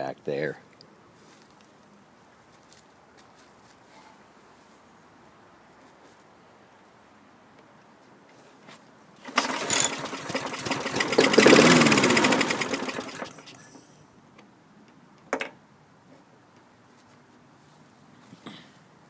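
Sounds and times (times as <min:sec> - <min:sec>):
mower engine starting and dying: 0:09.2 - 0:13.9.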